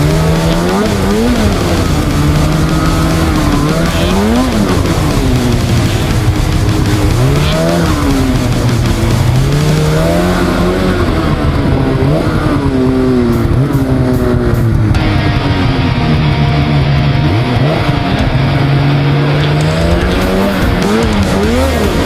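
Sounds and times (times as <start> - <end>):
snowmobile engine revving: 0.0 - 22.0
steady rushing noise: 0.0 - 22.0.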